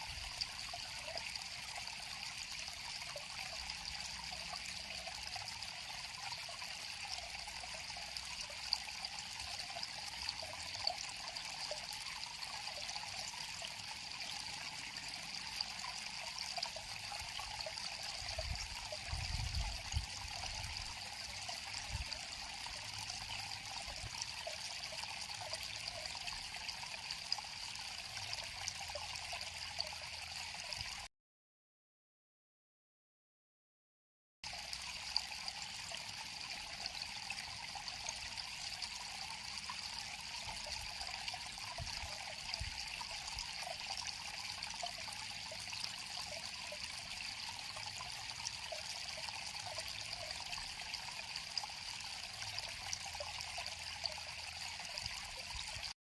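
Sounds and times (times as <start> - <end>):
river water babbling: 20.0 - 30.8, 34.5 - 55.9.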